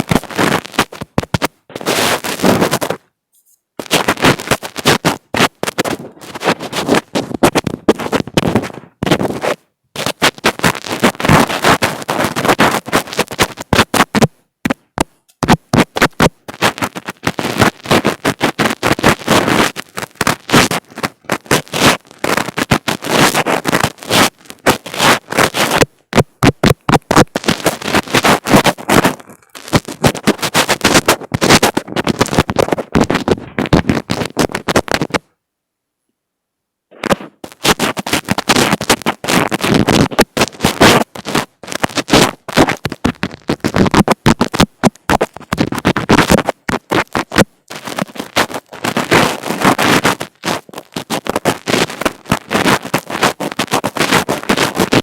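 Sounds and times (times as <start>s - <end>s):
fingers rubbing on microphone: 0.0s - 35.3s, 36.9s - 55.0s.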